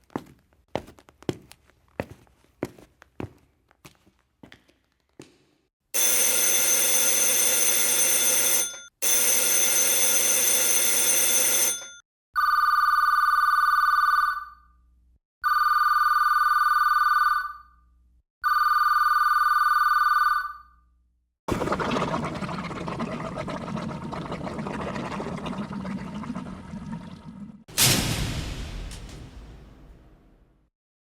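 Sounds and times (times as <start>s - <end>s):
telephone ringing: 6.0s - 14.8s, 15.4s - 17.8s, 18.4s - 20.9s.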